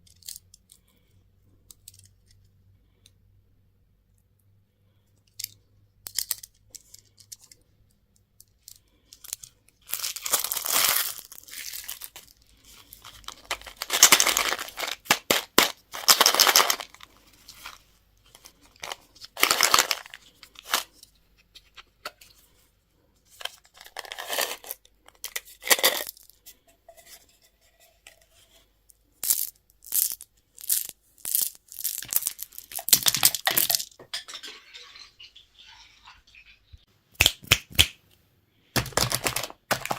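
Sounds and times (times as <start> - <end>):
wrapper clicks and crackles: 5.3 - 7.6, 8.4 - 21.1, 23.3 - 26.4, 29.2 - 36.6, 38.8 - 39.9
packaging tearing and crinkling: 9.9 - 12.3, 13.0 - 17.0, 18.8 - 20.9, 38.8 - 39.9.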